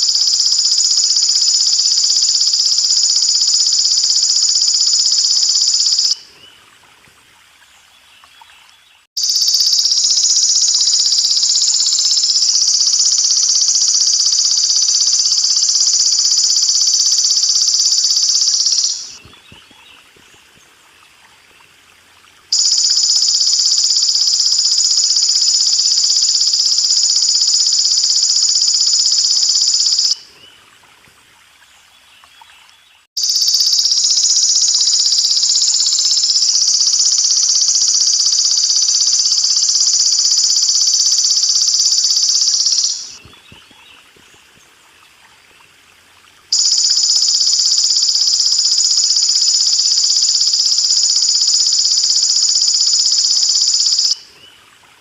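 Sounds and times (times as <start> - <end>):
insect buzzing trill: 0.0 - 6.2, 9.2 - 19.2, 22.5 - 30.2, 33.2 - 43.2, 46.5 - 54.2
water trickling: 6.2 - 9.1, 19.2 - 23.0, 30.2 - 33.1, 43.2 - 46.5.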